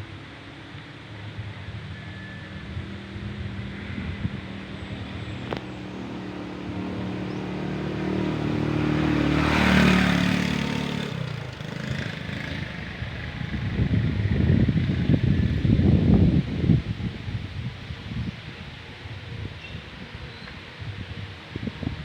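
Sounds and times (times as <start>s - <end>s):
motor vehicle passing by: 0.0s - 17.4s
wind buffeting microphone: 1.2s - 22.0s.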